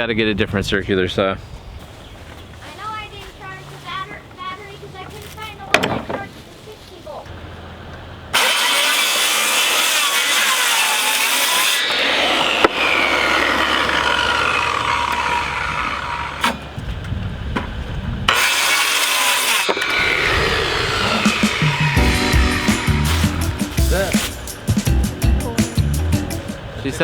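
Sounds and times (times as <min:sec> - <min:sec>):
circular saw cutting wood: 0:08.3 - 0:16.8, 0:18.3 - 0:25.6.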